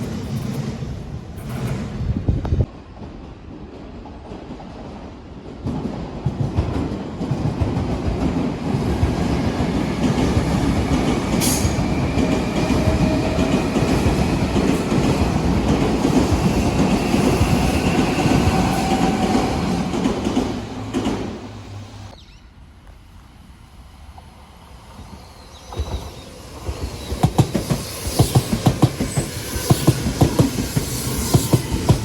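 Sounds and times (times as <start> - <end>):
train wheels rumbling on rails: 0.0 - 22.1, 22.8 - 32.0.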